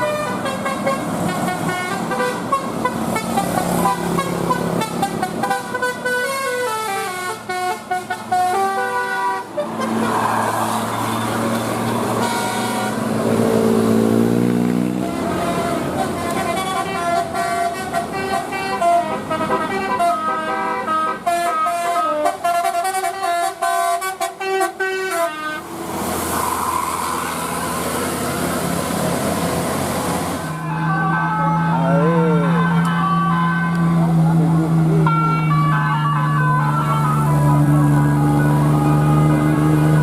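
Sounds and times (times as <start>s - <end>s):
musical horn melody: 0.0s - 10.1s, 12.2s - 13.0s, 15.0s - 25.6s.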